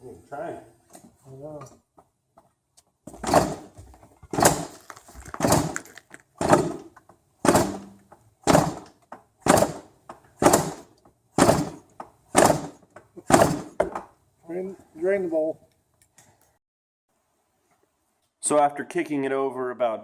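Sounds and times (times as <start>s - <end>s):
motorcycle kick-start turnover: 4.3s - 6.8s.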